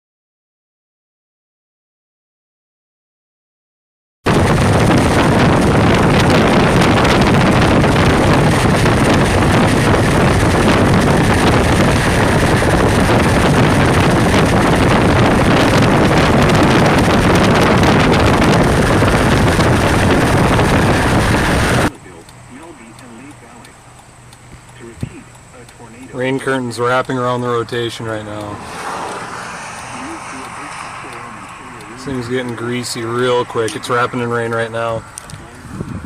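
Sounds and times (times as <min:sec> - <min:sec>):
heavy rain on vehicle: 0:04.3 - 0:21.9
storm wind roaring: 0:04.3 - 0:21.9, 0:28.2 - 0:36.0
wind buffeting microphone: 0:04.3 - 0:36.0.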